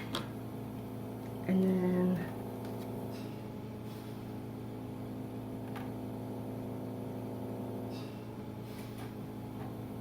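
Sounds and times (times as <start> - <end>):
electrical hum with pitched tones: 0.0 - 10.0.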